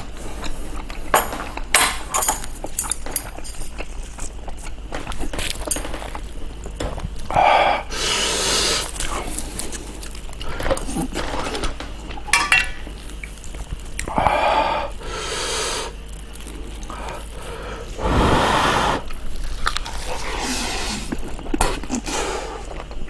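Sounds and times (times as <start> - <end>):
loud noisy breaths or slurps: 7.3 - 9.8, 14.1 - 16.0, 16.9 - 19.2, 19.9 - 22.8.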